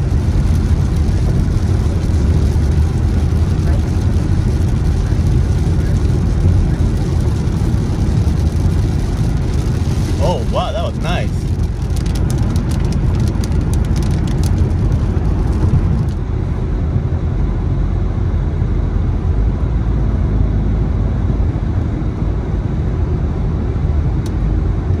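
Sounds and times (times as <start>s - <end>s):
heavy rain on car: 0.0s - 16.6s
road rumble: 0.0s - 25.0s.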